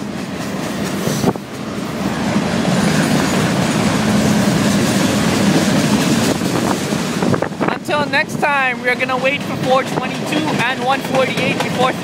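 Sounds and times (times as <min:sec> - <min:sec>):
freight train cars rolling past: 0:00.0 - 0:12.0.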